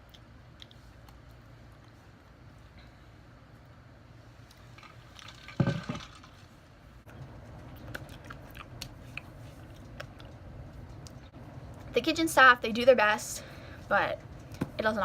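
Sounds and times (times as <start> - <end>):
chewing with mouth clicks: 0.0 - 2.0, 7.1 - 11.9.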